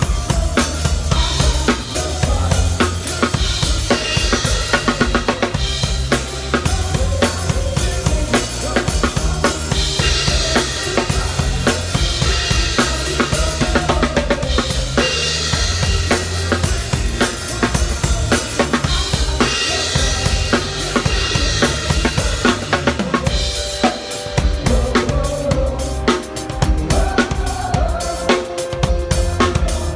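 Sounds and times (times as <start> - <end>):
drum kit playing: 0.0 - 29.9
recorded backing music: 0.0 - 29.9.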